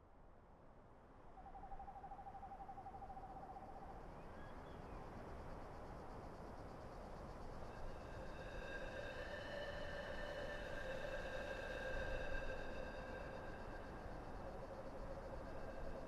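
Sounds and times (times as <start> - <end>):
faint forest ambience: 0.0 - 16.0.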